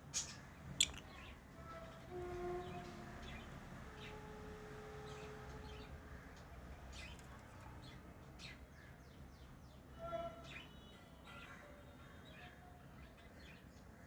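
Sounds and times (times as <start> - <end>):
lovebirds chirping: 0.8 - 1.0.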